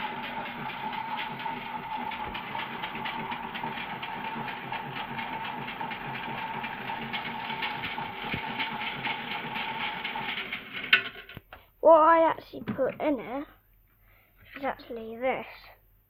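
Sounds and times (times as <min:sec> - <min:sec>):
plastic object rattling in drum: 0:00.0 - 0:11.5.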